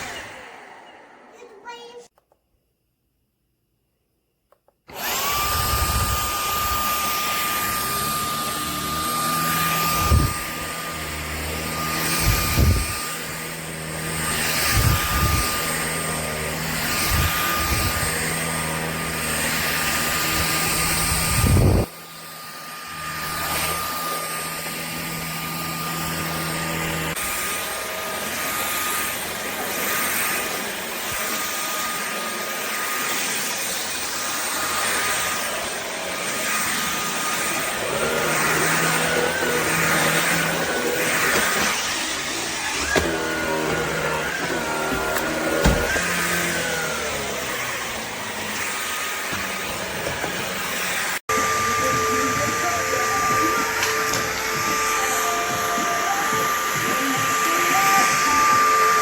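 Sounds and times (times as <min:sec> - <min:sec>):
stick vacuum motor whining: 0:04.5 - 0:59.0.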